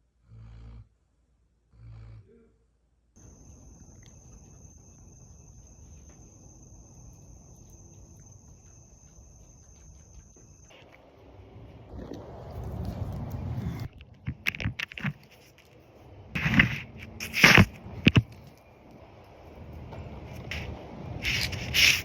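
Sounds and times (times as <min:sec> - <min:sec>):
insects trilling: 0:03.2 - 0:11.9
faint low rumble: 0:03.2 - 0:22.0.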